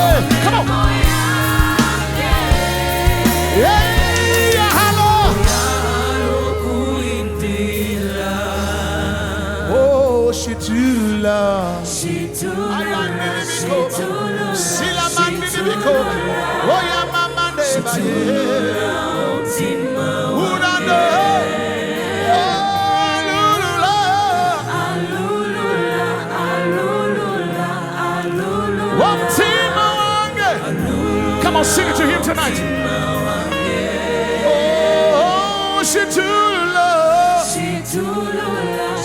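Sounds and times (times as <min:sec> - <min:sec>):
band with bass and cymbals: 0:00.0 - 0:12.9
choir singing: 0:00.0 - 0:39.0.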